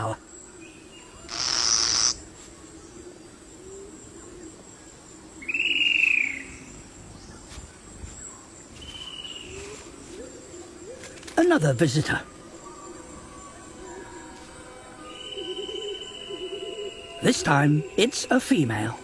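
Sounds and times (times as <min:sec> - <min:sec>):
insect-like hiss: 0:00.0 - 0:19.0
whistled bird call: 0:05.4 - 0:06.6, 0:15.0 - 0:17.2.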